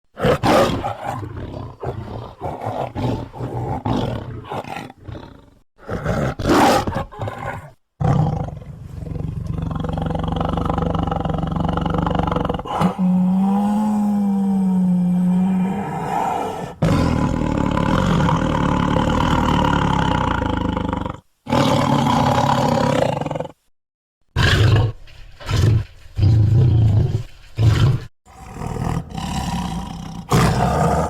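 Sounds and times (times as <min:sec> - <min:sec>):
loud animal roar: 0:00.2 - 0:23.6, 0:24.4 - 0:31.0
long animal growl: 0:07.2 - 0:23.6, 0:26.2 - 0:31.0
rasping animal grunts: 0:24.4 - 0:31.0.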